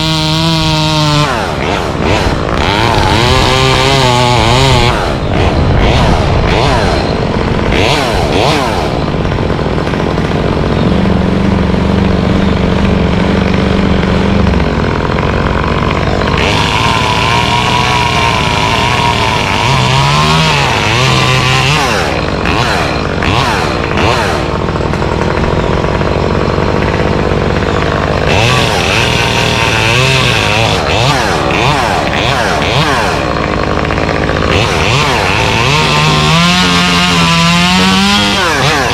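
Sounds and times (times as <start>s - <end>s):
chainsaw cutting wood: 0.0s - 38.9s
low engine hum: 0.0s - 38.9s.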